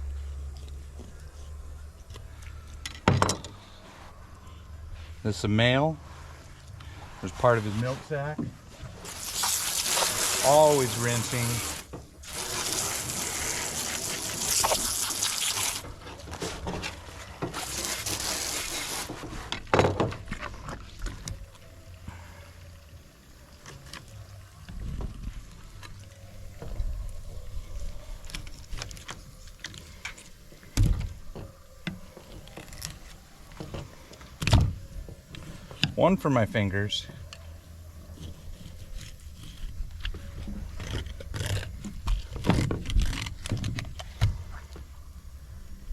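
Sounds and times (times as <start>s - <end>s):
running water rinsing fish: 9.0s - 16.0s, 17.6s - 19.1s.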